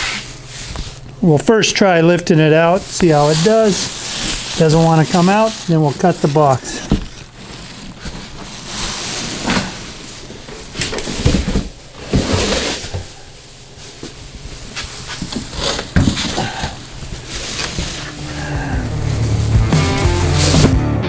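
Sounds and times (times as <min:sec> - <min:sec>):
cardboard rustling and scraping: 0:02.8 - 0:19.4.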